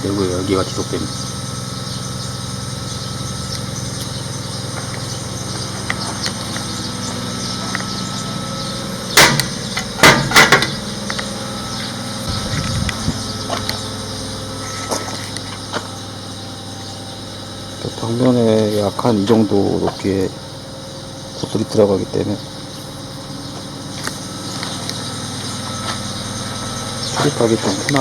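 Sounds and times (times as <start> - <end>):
engine humming: 0.0 - 28.0
loud knocks: 9.1 - 10.8.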